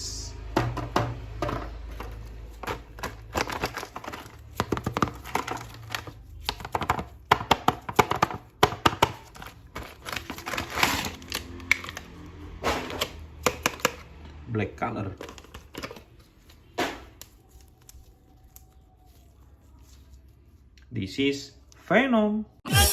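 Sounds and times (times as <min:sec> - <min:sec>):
plastic parts clicking and tapping: 0:00.6 - 0:12.2, 0:12.9 - 0:14.3, 0:15.1 - 0:16.2
packaging crinkling: 0:01.8 - 0:08.4, 0:09.0 - 0:12.3, 0:15.2 - 0:20.6.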